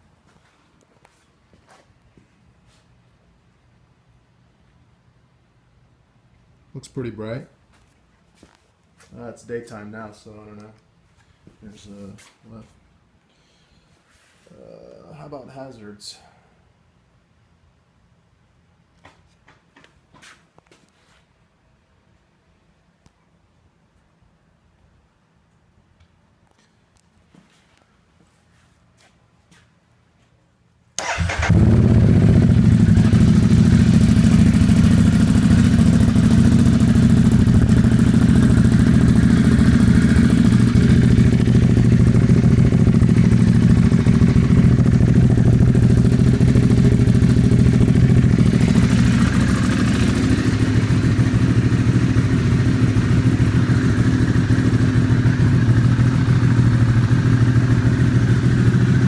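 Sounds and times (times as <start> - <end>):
motorcycle engine starting and idling: 31.0 - 59.0.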